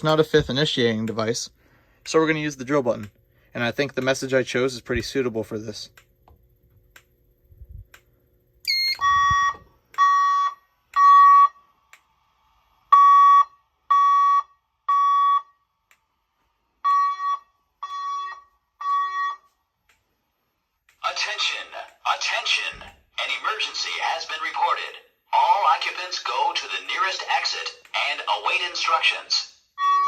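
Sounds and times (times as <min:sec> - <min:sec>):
alarm air-horn beeps: 0:08.7 - 0:11.7, 0:16.8 - 0:19.6, 0:29.7 - 0:30.0.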